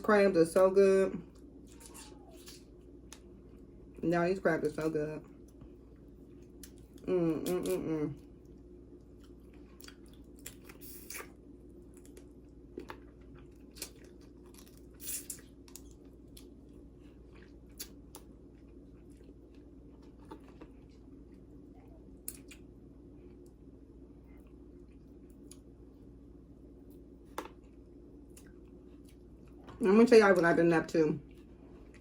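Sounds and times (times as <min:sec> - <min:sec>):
steady low hum: 0:00.0 - 0:32.0
chewing: 0:05.4 - 0:23.6.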